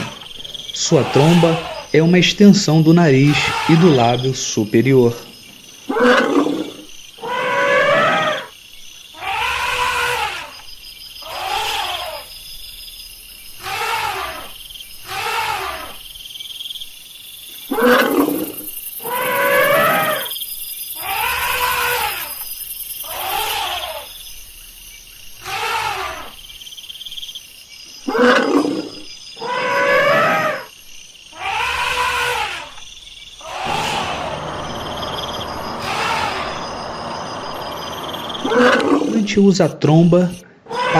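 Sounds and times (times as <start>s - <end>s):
elephant calling: 0.0s - 5.1s, 5.9s - 8.5s, 9.2s - 10.6s, 11.2s - 12.3s, 13.5s - 16.0s, 17.7s - 20.4s, 21.0s - 24.2s, 25.4s - 26.4s, 28.0s - 30.7s, 31.3s - 32.8s, 33.4s - 40.9s.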